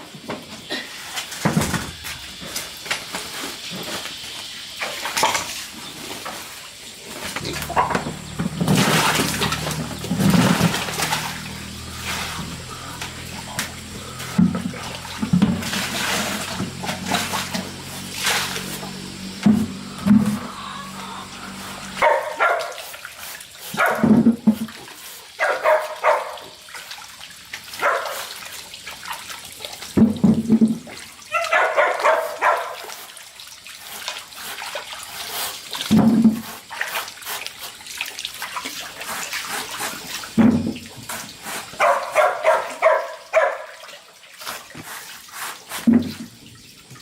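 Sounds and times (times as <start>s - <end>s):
dog barking: 7.7s - 8.0s, 22.0s - 22.8s, 23.7s - 24.2s, 25.4s - 26.5s, 27.8s - 28.3s, 31.3s - 32.9s, 41.8s - 43.8s.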